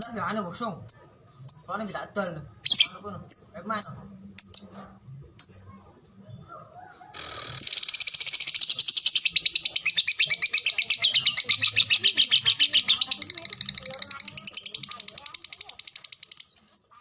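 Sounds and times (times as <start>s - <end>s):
bird chirping: 0.0s - 17.0s
bird chattering trill: 2.6s - 4.8s, 7.2s - 16.6s.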